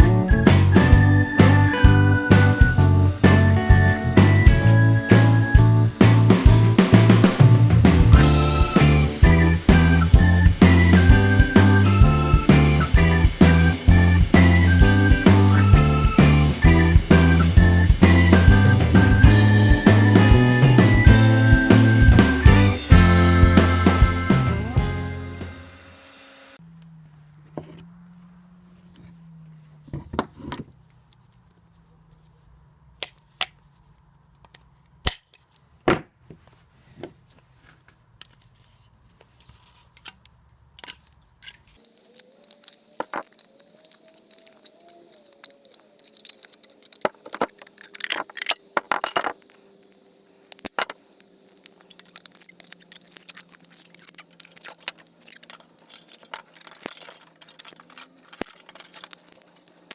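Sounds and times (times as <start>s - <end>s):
hard objects clinking and scraping: 41.5s - 59.9s.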